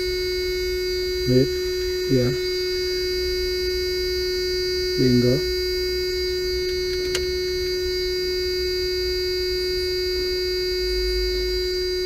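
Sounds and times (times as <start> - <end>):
electrical hum: 0.0 - 12.0
small click: 6.9 - 7.3.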